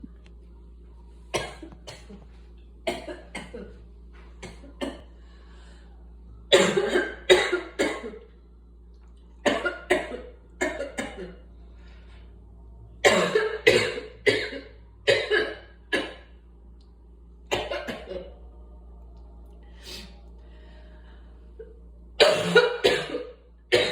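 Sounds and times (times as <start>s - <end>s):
steady low hum: 0.0s - 23.9s
person coughing: 1.3s - 2.3s, 2.9s - 3.8s, 6.5s - 8.2s, 9.4s - 11.4s, 13.0s - 16.3s, 17.5s - 18.3s, 22.2s - 23.9s.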